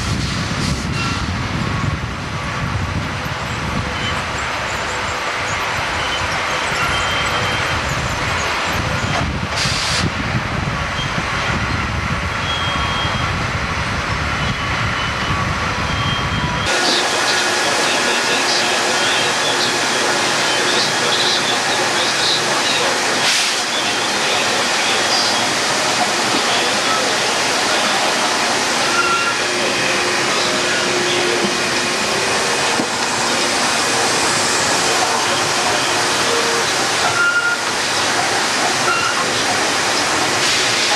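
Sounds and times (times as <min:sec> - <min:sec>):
hissy mill noise: 0:16.7 - 0:40.9
sawmill machinery rumbling: 0:16.7 - 0:40.9.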